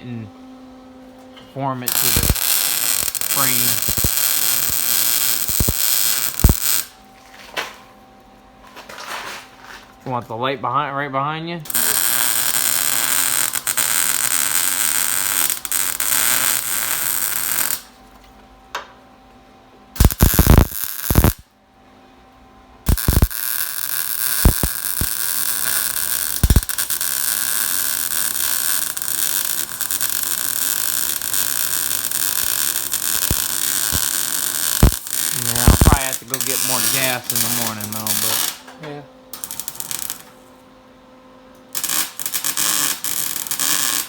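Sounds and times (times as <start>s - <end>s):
welder arc crackling: 1.7s - 7.0s, 11.7s - 18.0s, 20.0s - 21.4s, 22.9s - 38.6s, 39.3s - 40.4s, 41.7s - 44.0s.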